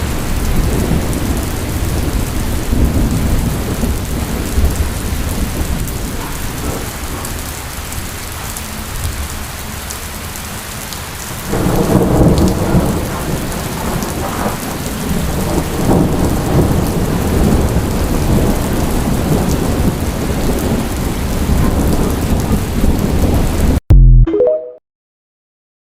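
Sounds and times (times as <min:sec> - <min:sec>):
thunder rumbling: 0:00.0 - 0:08.1, 0:11.4 - 0:23.8
heavy rain falling: 0:00.0 - 0:23.8.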